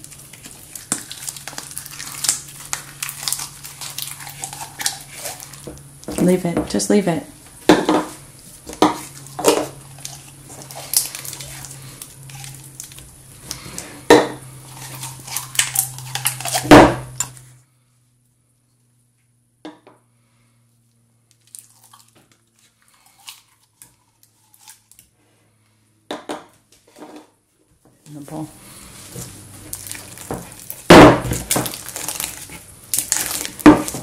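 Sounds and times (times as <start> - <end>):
low steady hum: 0.0 - 34.0
utensils clinking against bowl: 15.2 - 17.4.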